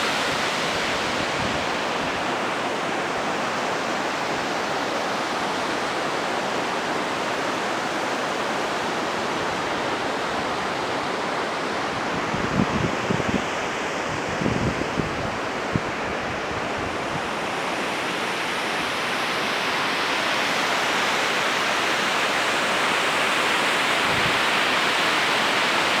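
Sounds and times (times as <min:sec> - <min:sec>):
waterfall rushing: 0:00.0 - 0:12.5, 0:16.9 - 0:26.0.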